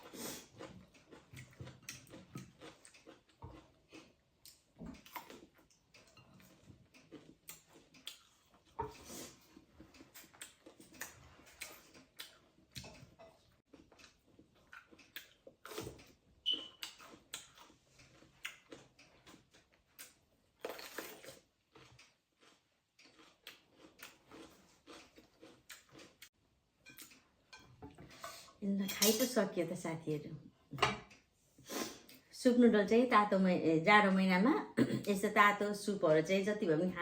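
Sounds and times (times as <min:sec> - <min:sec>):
chewing and mouth clicks: 0:00.0 - 0:27.4.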